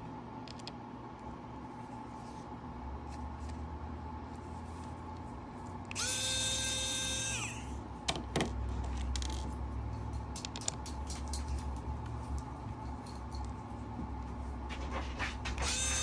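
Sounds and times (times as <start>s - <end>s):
electric screwdriver motor spinning: 5.9s - 7.7s, 15.6s - 16.0s.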